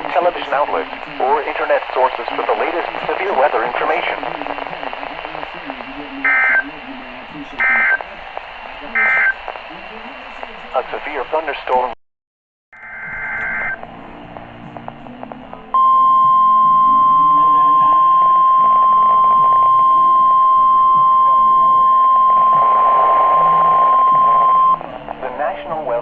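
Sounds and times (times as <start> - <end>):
steady warning alarm tone: 6.3 - 6.7, 7.6 - 8.0, 9.0 - 9.4, 12.8 - 13.8.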